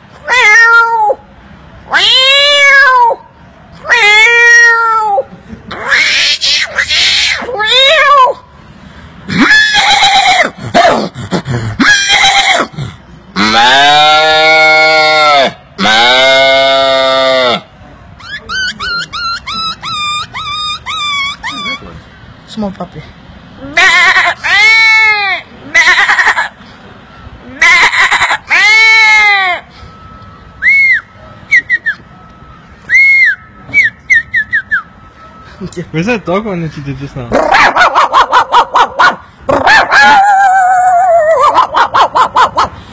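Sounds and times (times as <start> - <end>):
man imitating animal calls: 9.3 - 22.0, 23.6 - 26.6, 27.5 - 29.7, 37.3 - 42.8
whimpering squeaks: 18.2 - 22.0.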